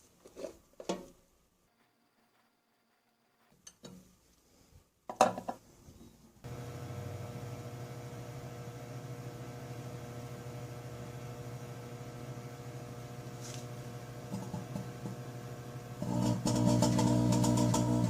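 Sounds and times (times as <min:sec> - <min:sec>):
microwave oven humming: 0:06.4 - 0:18.0.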